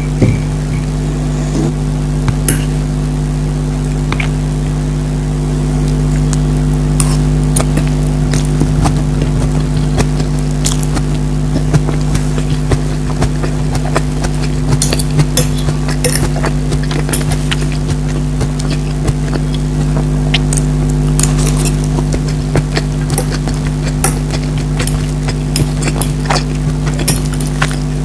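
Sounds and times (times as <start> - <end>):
loud steady low hum: 0.0 - 28.0
chewing sounds: 5.9 - 28.0.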